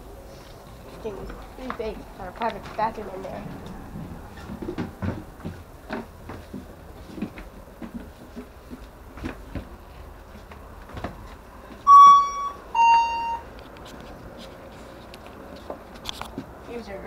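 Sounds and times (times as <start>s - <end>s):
faint clicking and rattling: 0.4s - 11.8s
two-note electronic chime: 11.9s - 13.5s.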